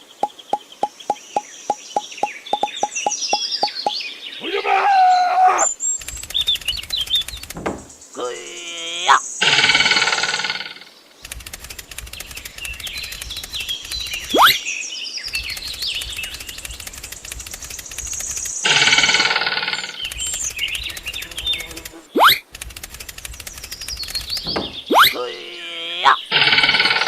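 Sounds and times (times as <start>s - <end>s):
bird chirps: 0.0s - 4.8s, 5.6s - 27.0s
mechanical clicking buzz: 11.3s - 14.6s, 15.3s - 25.2s.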